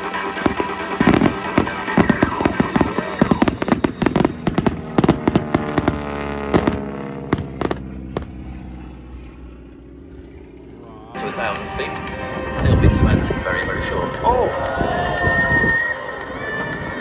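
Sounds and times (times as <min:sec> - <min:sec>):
fireworks bangs and crackles: 0:00.0 - 0:08.6.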